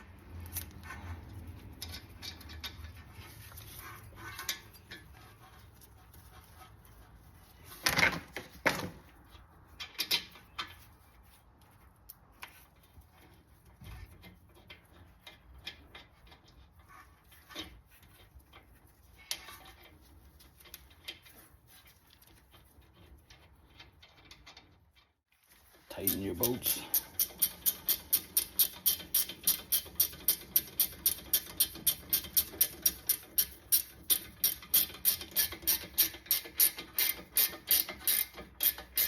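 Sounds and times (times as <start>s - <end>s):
metallic clicks of hand tools: 26.1s - 39.0s.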